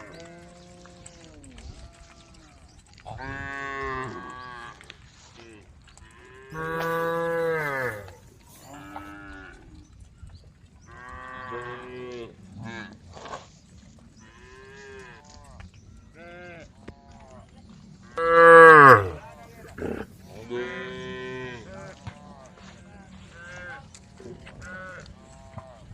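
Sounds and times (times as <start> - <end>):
cows mooing: 6.6 - 9.3, 18.2 - 20.1.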